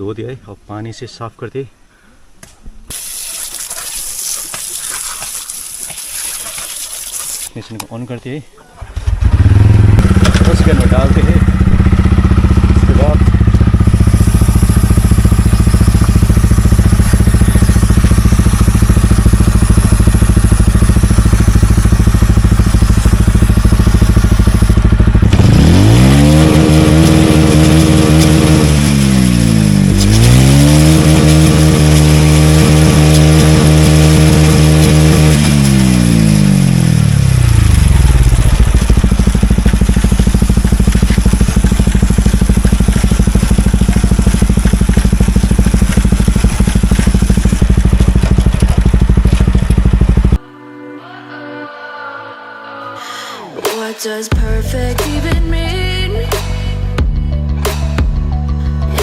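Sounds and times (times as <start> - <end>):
motorcycle engine revving: 8.8 - 50.4.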